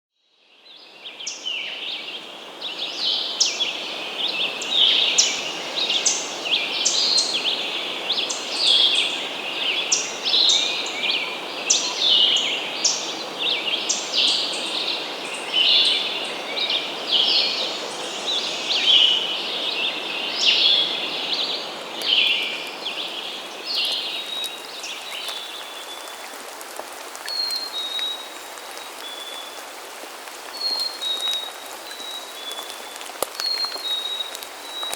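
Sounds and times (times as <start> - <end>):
birds chirping: 9.5 - 29.6, 30.4 - 34.9.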